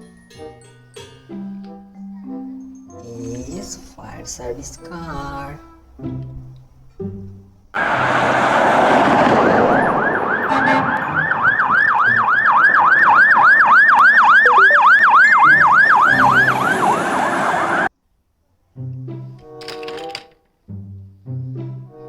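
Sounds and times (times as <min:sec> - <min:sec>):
steady rushing noise: 0:07.8 - 0:13.2, 0:15.6 - 0:17.9
siren yelping: 0:07.8 - 0:17.9.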